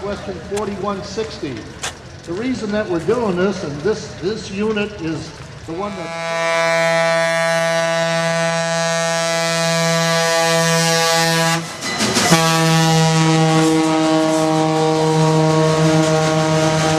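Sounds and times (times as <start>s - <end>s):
locomotive air horn blasts: 5.8s - 16.9s.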